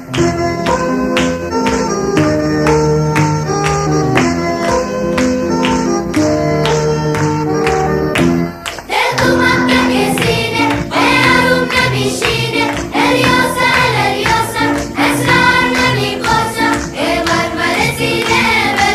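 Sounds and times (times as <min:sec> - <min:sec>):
instrumental music: 0:00.0 - 0:18.9
group singing over a beat: 0:08.9 - 0:18.9.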